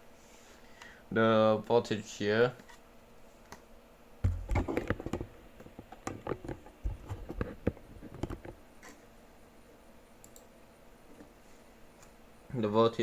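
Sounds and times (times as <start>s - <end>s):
small clicks and taps: 4.5s - 9.0s.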